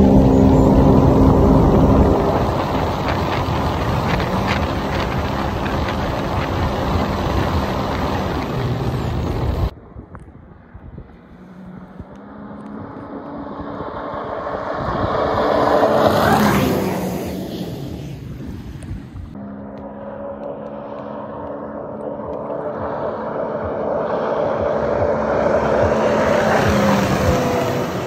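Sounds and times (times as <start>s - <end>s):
jet ski passing by: 0.0s - 9.7s, 11.1s - 18.7s, 19.4s - 28.0s
watercraft engine running: 0.0s - 9.7s, 19.2s - 28.0s.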